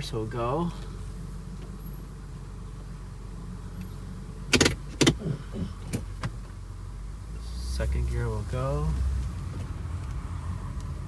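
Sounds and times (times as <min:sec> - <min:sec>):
car engine idling: 0:00.0 - 0:11.0
gear selector clunks and clicks: 0:03.8 - 0:06.6.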